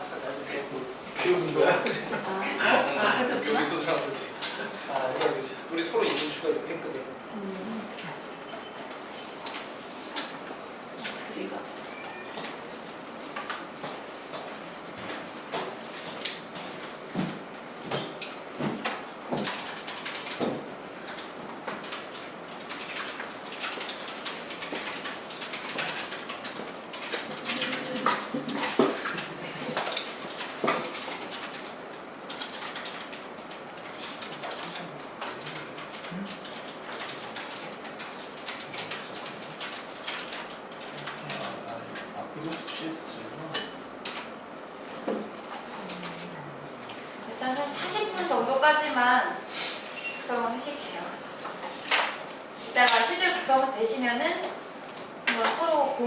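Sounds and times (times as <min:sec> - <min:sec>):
room background noise: 0:00.0 - 0:56.0
keyboard and mouse clicks: 0:17.9 - 0:42.8.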